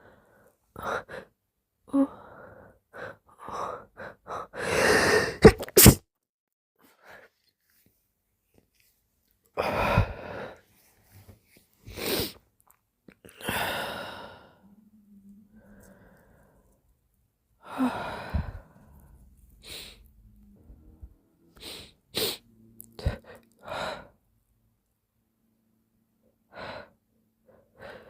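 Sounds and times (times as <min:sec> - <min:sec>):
breaths: 0:01.9 - 0:05.4, 0:09.6 - 0:12.4, 0:13.3 - 0:14.8, 0:15.5 - 0:16.8, 0:17.6 - 0:20.1, 0:21.6 - 0:24.2, 0:26.5 - 0:28.0
person sneezing: 0:04.9 - 0:06.0
soft low moan: 0:13.3 - 0:16.9, 0:17.6 - 0:24.1.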